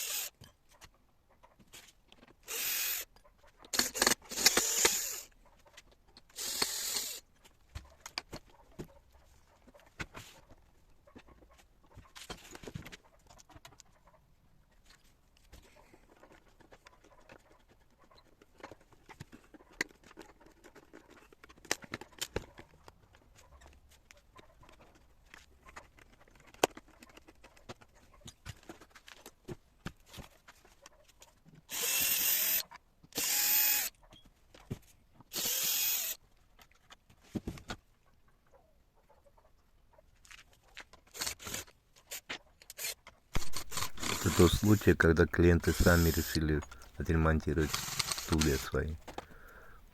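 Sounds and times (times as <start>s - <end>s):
cordless drill running: 0.0s - 0.3s, 2.5s - 3.0s, 3.8s - 5.2s, 6.4s - 7.2s, 31.7s - 32.6s, 33.2s - 33.9s, 35.3s - 36.2s, 43.4s - 45.0s, 45.6s - 47.0s, 47.6s - 48.5s.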